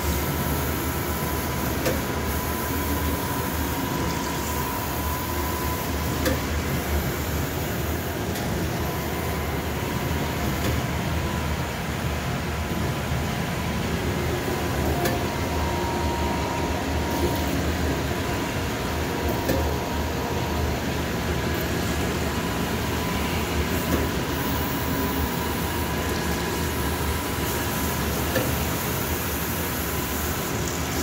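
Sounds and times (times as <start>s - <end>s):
grinder machine hum and whine: 0.0s - 31.0s.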